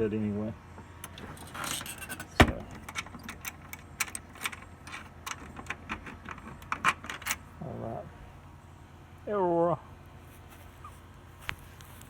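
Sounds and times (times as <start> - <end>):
light clicks and rattles: 1.0 - 7.4.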